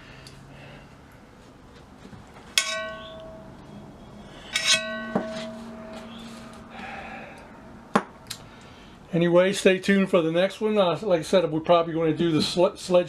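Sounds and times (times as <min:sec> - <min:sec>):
metal clinking against metal: 0:02.6 - 0:07.1.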